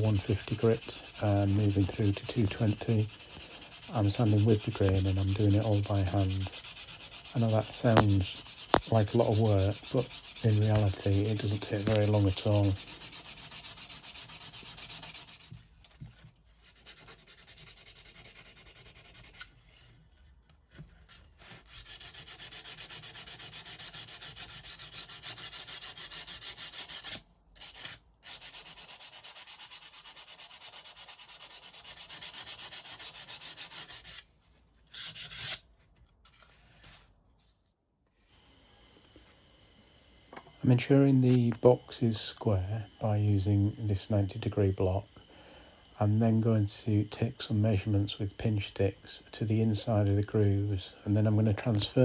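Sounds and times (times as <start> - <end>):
sandpaper on wood: 0.0 - 15.6, 16.6 - 19.5, 21.4 - 34.2.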